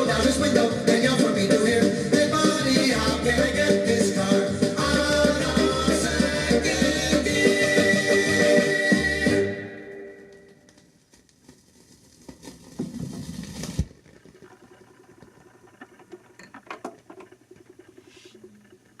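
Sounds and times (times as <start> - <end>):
vinyl record crackle and clicks: 8.2 - 19.0
rustling: 10.2 - 13.9.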